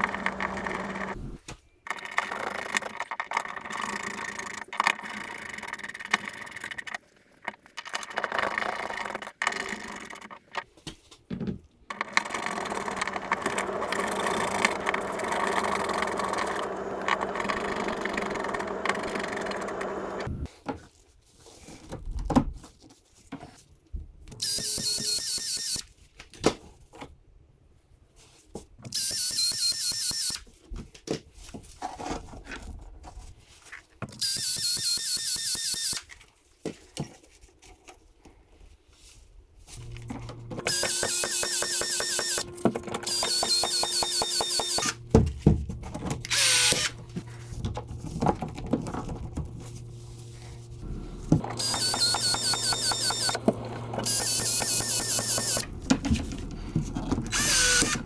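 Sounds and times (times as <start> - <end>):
high-pitched power tool whine: 0.0 - 1.4, 13.4 - 20.4, 24.4 - 25.8, 34.2 - 36.0, 39.8 - 45.2, 46.2 - 47.4, 49.6 - 56.2, 57.3 - 58.0
hand tools and plumbing work: 0.0 - 10.7, 11.4 - 22.2, 31.6 - 36.1, 39.8 - 58.0.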